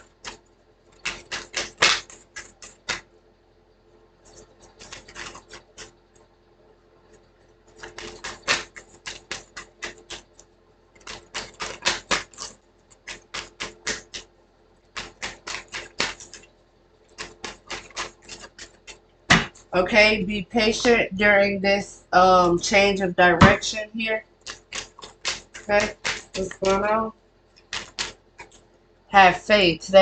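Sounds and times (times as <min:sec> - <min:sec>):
cards being shuffled: 0:00.1 - 0:03.0, 0:04.4 - 0:05.9, 0:07.8 - 0:10.3, 0:11.0 - 0:14.3, 0:14.9 - 0:16.5, 0:17.1 - 0:19.7, 0:24.4 - 0:27.0, 0:27.6 - 0:28.7.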